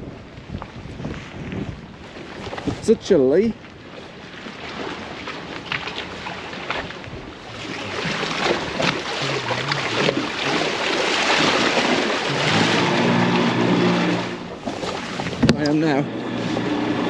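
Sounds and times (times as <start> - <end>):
rushing water: 0.0 - 17.0
wind on microphone: 0.0 - 17.0
outboard motor running: 3.7 - 17.0.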